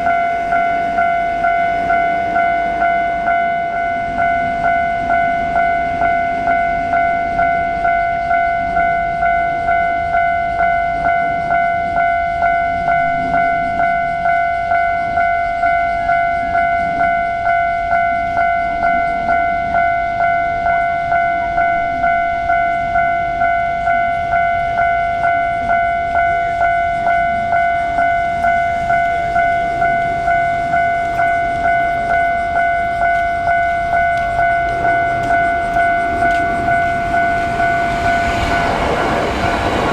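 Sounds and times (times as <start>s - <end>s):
railroad crossing bell ringing: 0.0s - 39.9s.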